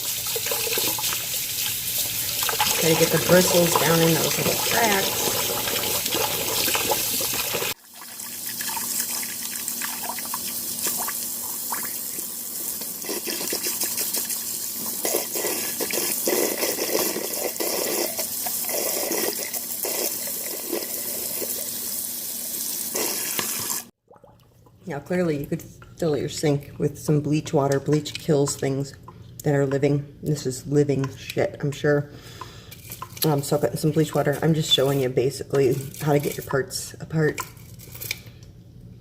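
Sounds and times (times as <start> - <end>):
tap water running into sink: 0.0 - 21.8, 22.6 - 23.9
brush scrubbing: 2.4 - 7.8.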